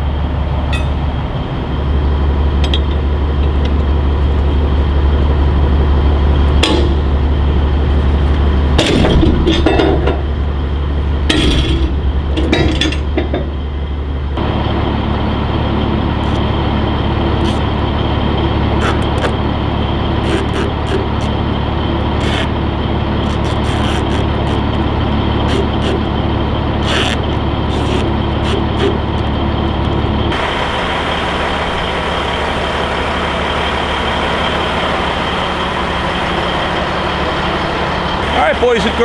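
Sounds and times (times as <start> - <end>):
engine running: 0.0 - 39.0
metal clanks and clinks: 0.7 - 1.1, 8.8 - 10.3, 11.3 - 13.5.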